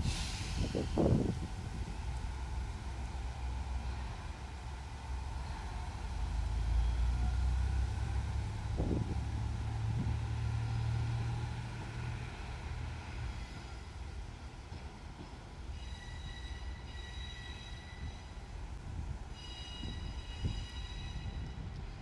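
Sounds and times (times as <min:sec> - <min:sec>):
railcar engine rumble: 0:00.0 - 0:22.0.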